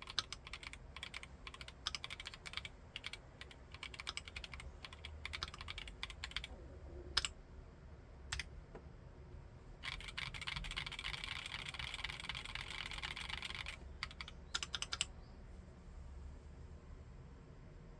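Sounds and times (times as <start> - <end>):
typing on mechanical keyboard: 0.0 - 6.5, 9.8 - 15.1.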